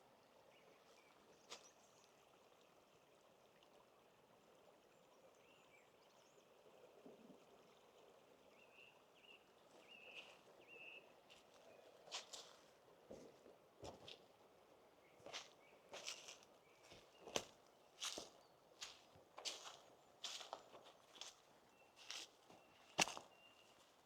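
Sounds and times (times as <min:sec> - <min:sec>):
faint bird chirps: 0:08.5 - 0:12.6, 0:21.1 - 0:24.0.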